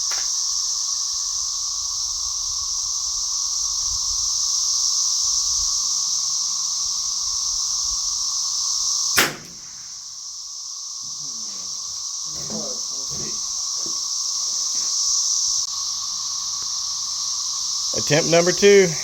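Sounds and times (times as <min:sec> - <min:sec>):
cicadas singing: 0:00.0 - 0:19.0
rifle shot: 0:09.2 - 0:10.1.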